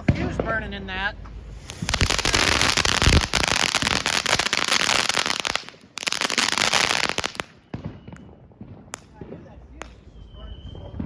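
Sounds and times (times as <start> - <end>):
firework fountain crackling: 1.4 - 7.6.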